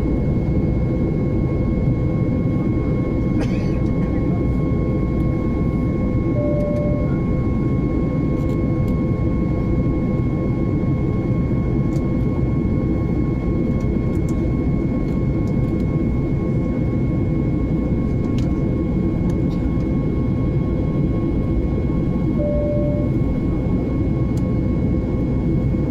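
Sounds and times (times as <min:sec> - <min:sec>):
airliner engine rumble and rushing air: 0:00.0 - 0:25.9
short tone: 0:06.4 - 0:07.3, 0:22.4 - 0:23.3.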